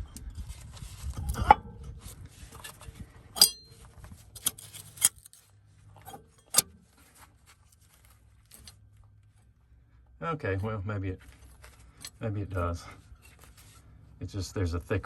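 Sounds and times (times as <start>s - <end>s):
metallic clinks and knocks: 3.4s - 5.4s.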